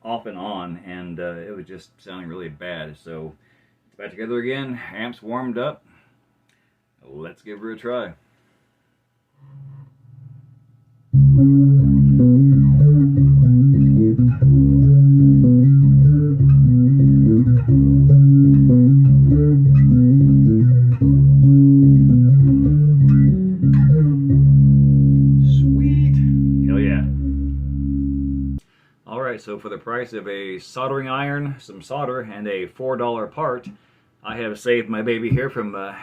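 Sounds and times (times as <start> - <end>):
electric bass plucked notes: 9.5 - 28.6.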